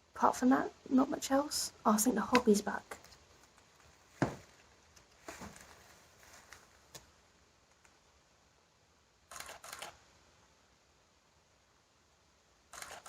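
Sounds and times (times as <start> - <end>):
camera shutter clicks: 9.3 - 10.0, 12.7 - 13.0.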